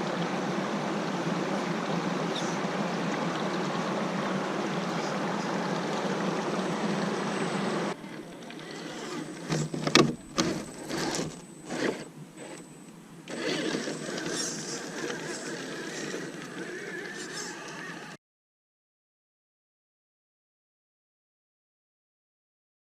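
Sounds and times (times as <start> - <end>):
water rushing in stream: 0.0 - 12.5.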